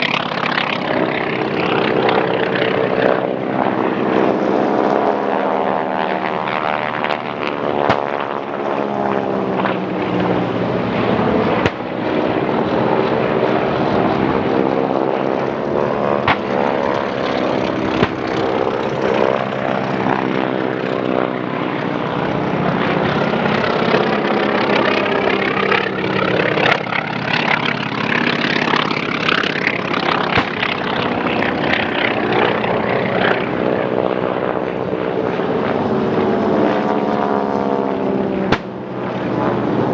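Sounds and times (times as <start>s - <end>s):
propeller planes flying low: 0.0s - 39.9s
sharp cracks: 7.9s - 8.1s, 11.6s - 12.0s, 16.2s - 18.8s, 29.3s - 31.3s, 38.5s - 38.8s.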